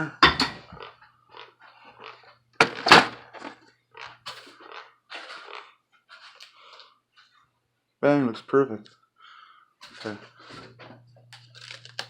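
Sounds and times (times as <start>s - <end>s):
printer set down with thud: 2.6s - 3.2s.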